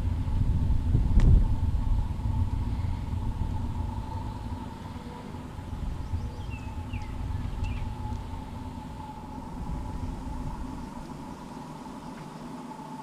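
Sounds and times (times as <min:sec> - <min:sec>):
boat motor running: 0:00.0 - 0:13.0
bird chirps: 0:04.3 - 0:08.4.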